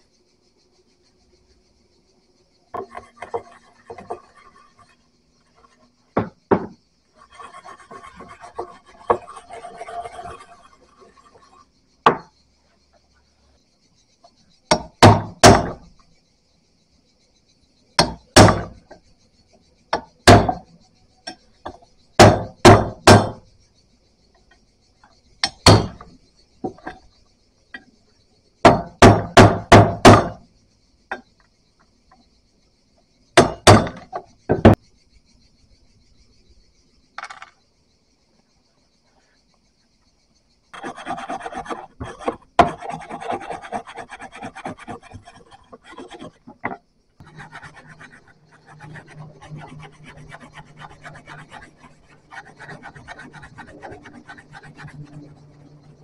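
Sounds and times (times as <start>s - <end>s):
tool striking hard knocks: 6.2s - 6.8s, 14.7s - 15.8s, 18.0s - 18.8s, 20.2s - 20.6s, 22.2s - 23.4s, 25.4s - 26.1s, 28.6s - 30.4s, 33.4s - 34.8s.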